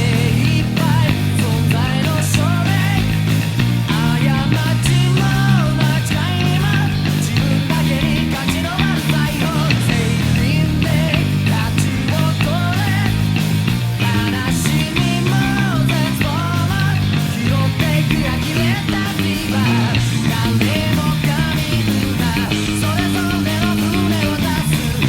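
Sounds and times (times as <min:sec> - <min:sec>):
electric bass: 0:00.0 - 0:25.0
punk rock band: 0:00.0 - 0:25.0
sung vocals: 0:00.0 - 0:25.0.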